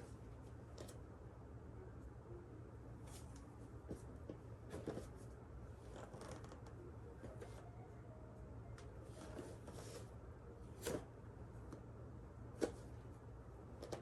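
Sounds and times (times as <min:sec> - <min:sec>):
low steady hum: 0:00.0 - 0:14.0
clothing and mat rustling: 0:09.1 - 0:10.2.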